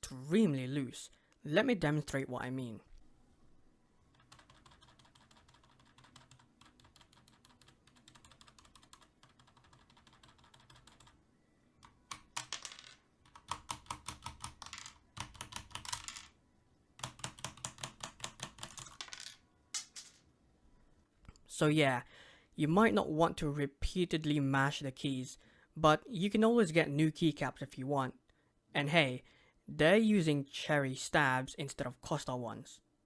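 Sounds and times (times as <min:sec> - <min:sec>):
keyboard keys clacking rapidly: 0:04.2 - 0:11.2.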